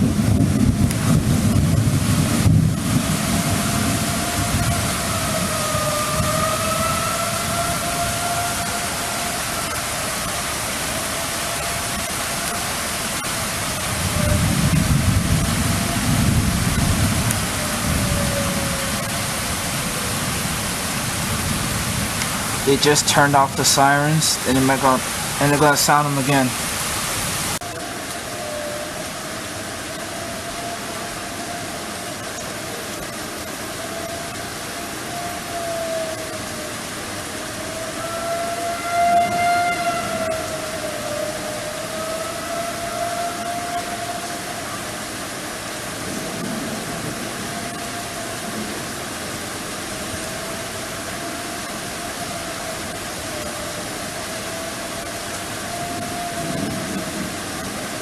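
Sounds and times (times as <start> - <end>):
storm noise hiss: 0.0 - 58.0
tornado warning siren: 0.0 - 58.0
steady hiss: 19.2 - 33.8.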